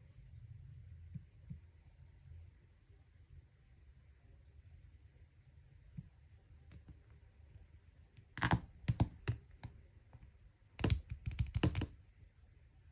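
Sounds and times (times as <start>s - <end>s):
light taps and knocks on phones: 8.4s - 9.8s, 10.8s - 12.0s.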